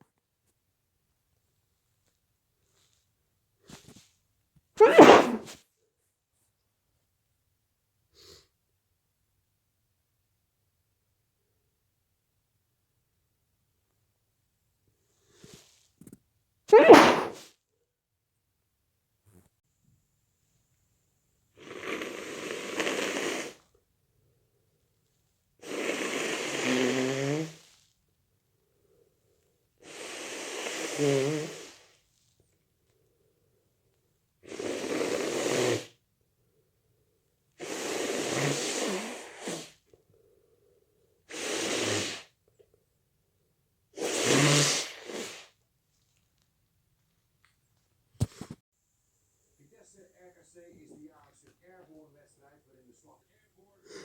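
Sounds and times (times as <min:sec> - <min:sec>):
person blowing nose: 0:04.8 - 0:05.6, 0:16.7 - 0:17.5, 0:21.6 - 0:23.7, 0:25.6 - 0:27.8, 0:29.8 - 0:32.0, 0:34.4 - 0:36.0, 0:37.6 - 0:39.9, 0:41.3 - 0:42.4, 0:44.0 - 0:45.6.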